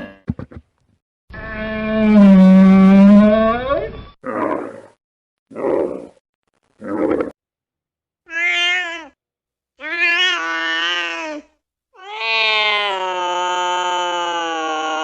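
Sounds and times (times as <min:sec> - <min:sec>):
cat meowing: 0:08.3 - 0:09.2, 0:12.0 - 0:13.2.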